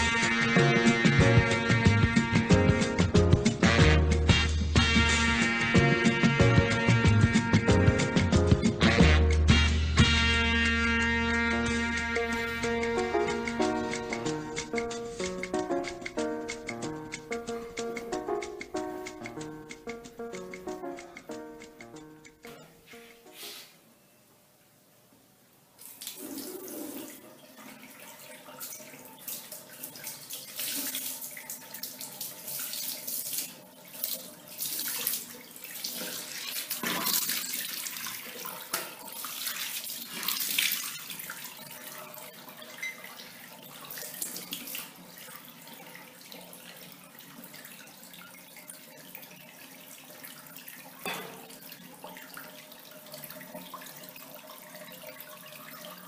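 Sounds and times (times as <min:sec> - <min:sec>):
water running from a tap: 0:25.8 - 0:56.0.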